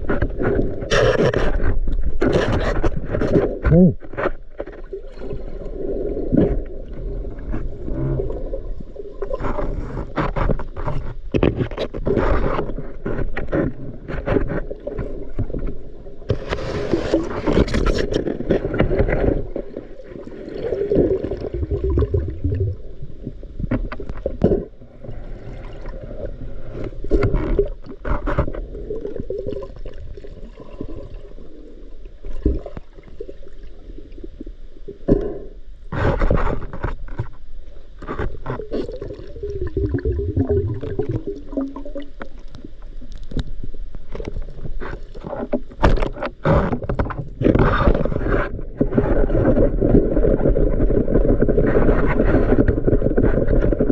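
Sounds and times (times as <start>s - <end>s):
knocks and scrapes: 0.0s - 5.4s, 9.2s - 20.2s, 26.6s - 28.8s, 35.9s - 39.8s, 42.2s - 53.9s
underwater sloshing and bubbling: 0.0s - 53.9s.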